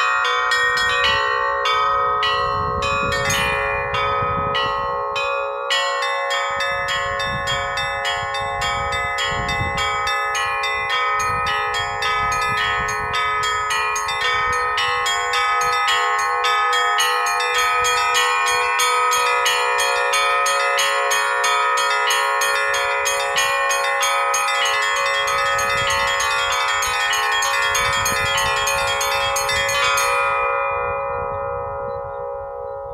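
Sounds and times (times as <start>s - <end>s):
church bells ringing: 0.0s - 32.9s.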